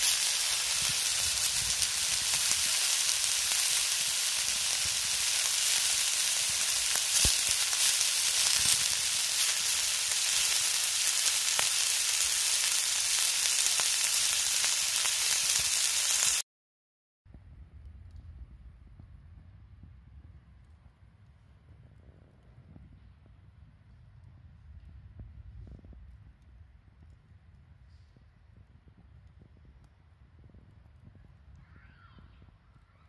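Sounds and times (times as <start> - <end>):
food sizzling in a pan: 0.0 - 16.4.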